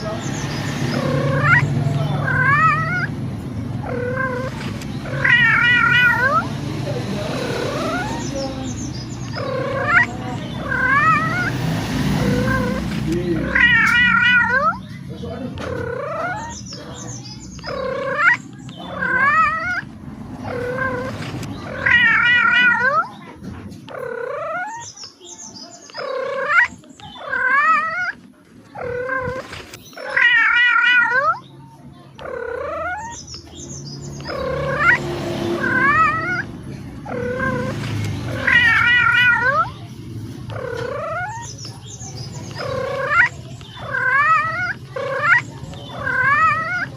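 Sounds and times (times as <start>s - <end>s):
cat meowing: 0.9s - 3.1s, 3.8s - 6.6s, 7.3s - 8.6s, 9.2s - 11.5s, 12.2s - 14.9s, 15.6s - 16.8s, 17.6s - 23.2s, 23.9s - 24.9s, 25.9s - 28.2s, 28.8s - 31.5s, 32.2s - 33.3s, 34.2s - 35.0s, 35.6s - 39.8s, 40.5s - 41.5s, 42.5s - 46.9s.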